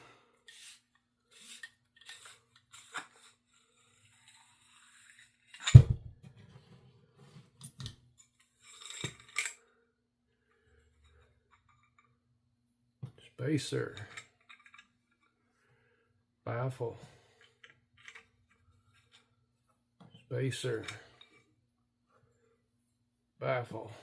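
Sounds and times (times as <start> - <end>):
metal parts clicking and scraping: 0.5 - 5.8, 7.6 - 9.6, 13.8 - 15.4, 17.4 - 19.2.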